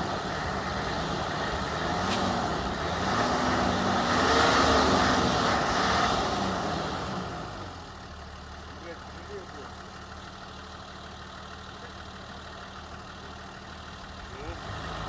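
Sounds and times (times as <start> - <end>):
car engine revving: 0.0 - 8.0, 13.9 - 15.0.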